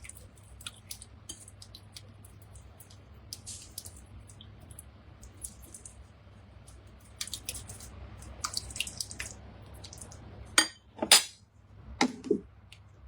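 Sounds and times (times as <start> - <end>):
thick soup being stirred: 0.0 - 10.2.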